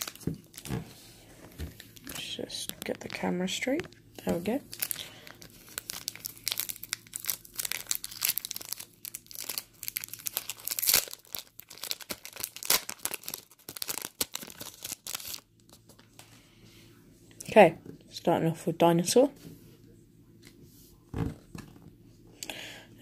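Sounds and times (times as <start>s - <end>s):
wrapper tearing and crinkling: 0.0s - 0.7s, 4.7s - 15.5s.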